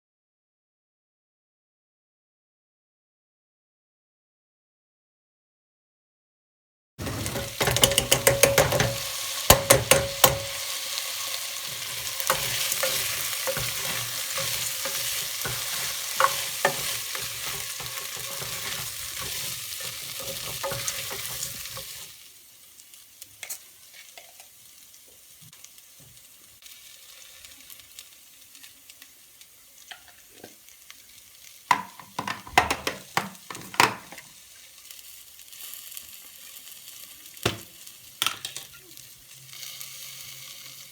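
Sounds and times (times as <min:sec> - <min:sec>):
kitchenware clattering: 0:07.0 - 0:10.7, 0:11.7 - 0:21.9, 0:31.7 - 0:34.2
food sizzling in a pan: 0:07.0 - 0:40.9.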